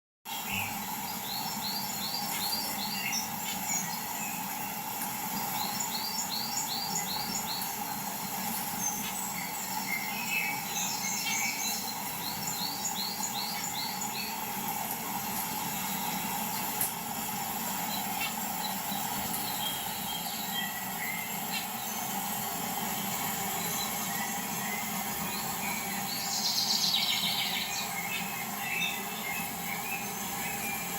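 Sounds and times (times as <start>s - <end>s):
birds chirping: 0.3s - 30.9s
steady high hiss: 0.3s - 30.9s.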